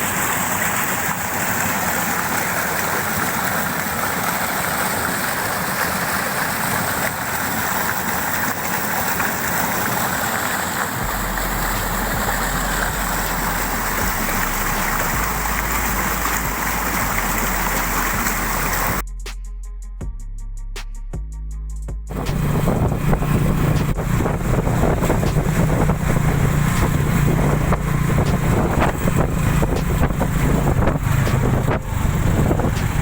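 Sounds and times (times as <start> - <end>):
waterfall rushing: 0.0 - 19.0, 22.1 - 33.0
music with regular beat: 11.0 - 33.0.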